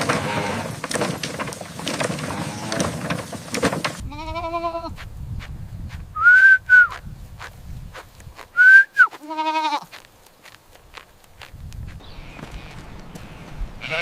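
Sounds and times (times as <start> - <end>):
animal bleating: 0.0 - 0.8, 2.2 - 3.0, 4.0 - 5.0, 9.1 - 10.0, 12.0 - 14.0
high whistled notes: 6.2 - 6.9, 8.6 - 9.1.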